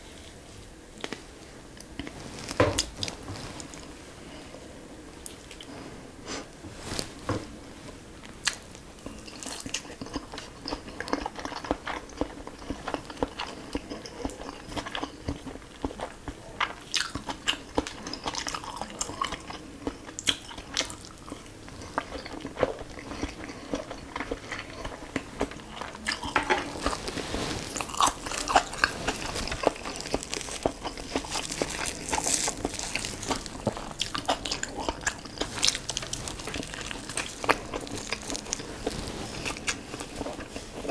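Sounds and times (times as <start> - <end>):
person chewing food: 8.2 - 40.9.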